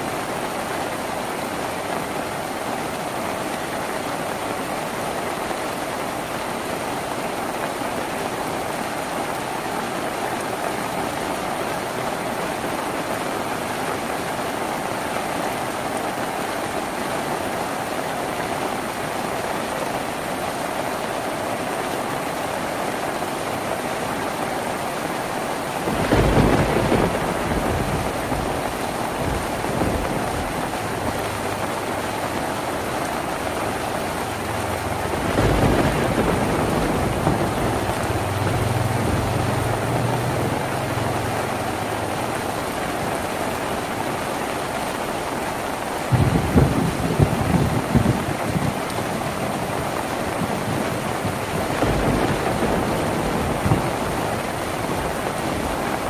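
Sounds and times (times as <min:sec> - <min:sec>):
rain on a tin roof: 0:00.0 - 0:56.0
low rolls of thunder: 0:25.8 - 0:32.0, 0:34.0 - 0:41.9, 0:46.1 - 0:56.0.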